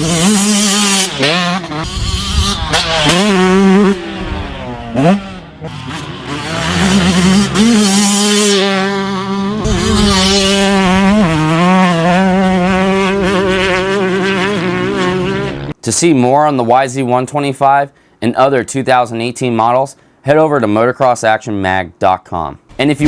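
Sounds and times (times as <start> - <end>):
two-stroke motorcycle engine revving: 0.0 - 15.8.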